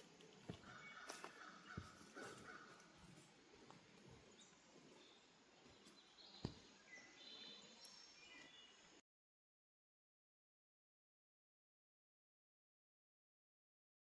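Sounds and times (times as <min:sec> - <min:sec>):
faint outdoor background noise: 0:00.0 - 0:09.0.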